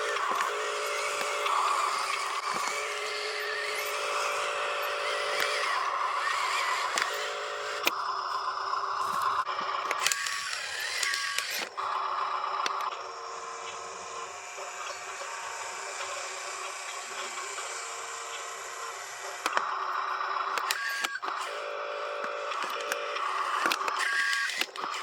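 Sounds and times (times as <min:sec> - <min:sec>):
sharp clicks: 0:00.0 - 0:08.0, 0:09.0 - 0:12.0, 0:12.6 - 0:13.8, 0:19.4 - 0:21.6, 0:22.2 - 0:25.0
small electric motors whining: 0:00.0 - 0:25.0.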